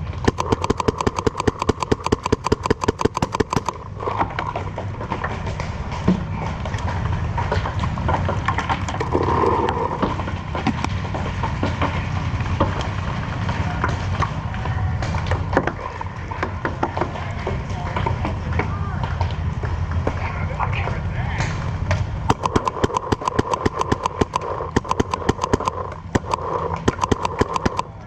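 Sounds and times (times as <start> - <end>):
paintball marker rapid firing: 0.1 - 4.0, 22.3 - 28.0
faint scattered shots: 0.2 - 3.8, 22.3 - 28.0.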